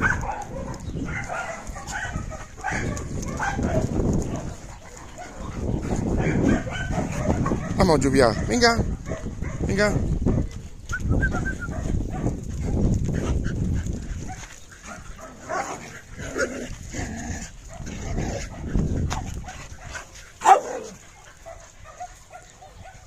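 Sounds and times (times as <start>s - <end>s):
dog barking: 0.0s - 10.5s, 19.8s - 23.0s.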